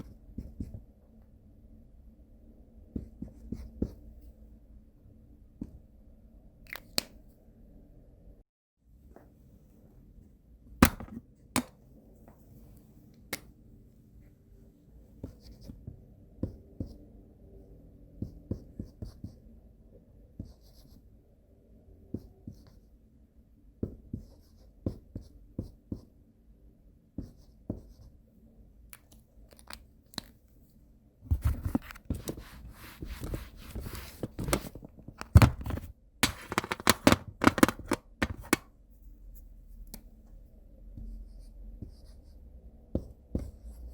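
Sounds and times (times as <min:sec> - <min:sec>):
marker writing on whiteboard: 0:02.9 - 0:04.1, 0:15.2 - 0:17.1, 0:18.1 - 0:19.5, 0:20.3 - 0:21.1, 0:22.1 - 0:23.0, 0:23.8 - 0:26.2, 0:27.1 - 0:28.2, 0:31.3 - 0:34.8, 0:40.9 - 0:43.9
marker taps: 0:10.8 - 0:11.8, 0:31.3 - 0:38.6.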